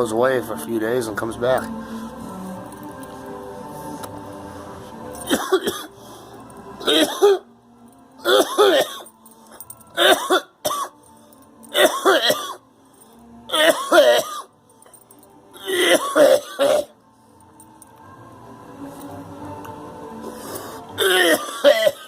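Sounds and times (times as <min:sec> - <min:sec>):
man coughing: 0:05.3 - 0:05.9, 0:06.8 - 0:07.4, 0:08.2 - 0:09.1, 0:10.0 - 0:10.9, 0:11.8 - 0:12.6, 0:13.5 - 0:14.5, 0:15.6 - 0:16.9, 0:21.0 - 0:22.0.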